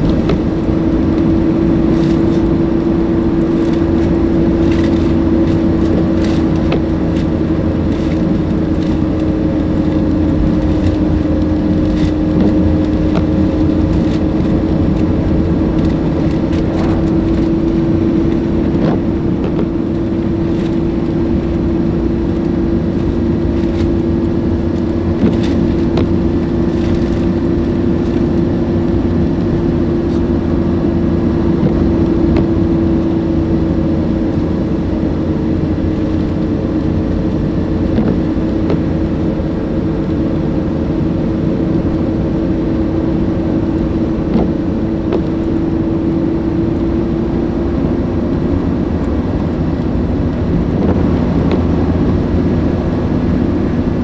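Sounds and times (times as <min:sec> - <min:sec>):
low rumble: 0:00.0 - 0:28.0, 0:43.9 - 0:54.0
steady motor hum: 0:00.0 - 0:54.0.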